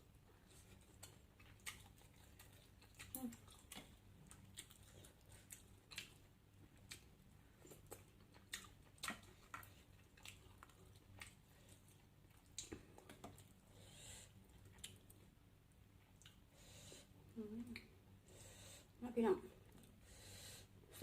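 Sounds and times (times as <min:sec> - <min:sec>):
person chewing: 0:00.3 - 0:15.4, 0:16.0 - 0:16.8.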